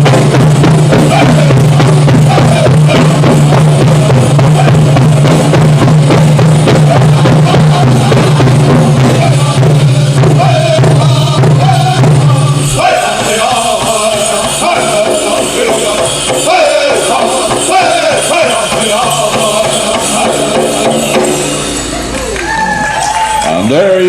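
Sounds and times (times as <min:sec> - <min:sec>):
group singing: 0:00.0 - 0:21.7
big hand drum beat: 0:00.0 - 0:22.0.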